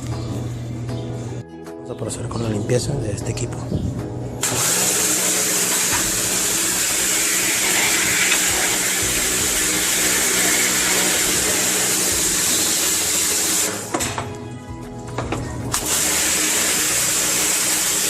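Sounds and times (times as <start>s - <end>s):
pressure washer spraying: 4.4s - 14.2s, 15.7s - 18.0s.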